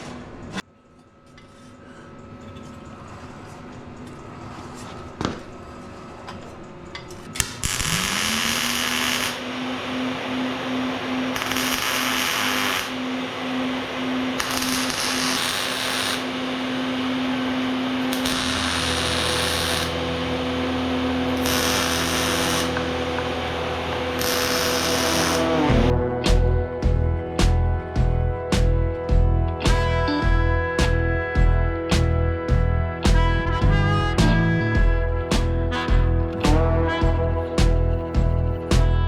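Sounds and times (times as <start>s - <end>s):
steady hum: 0.0s - 39.0s
welding arc crackling: 7.4s - 13.2s, 14.2s - 16.7s, 18.0s - 28.9s
deeper hum: 17.8s - 39.0s.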